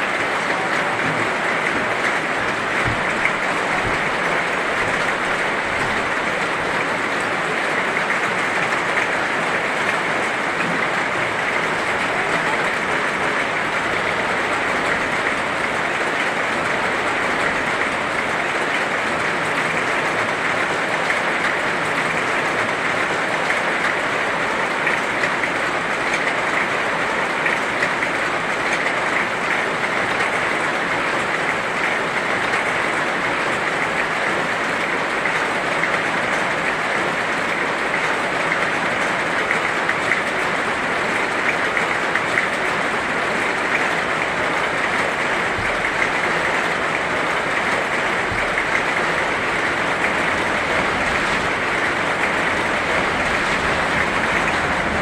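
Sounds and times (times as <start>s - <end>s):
heavy rain falling: 0.0s - 55.0s.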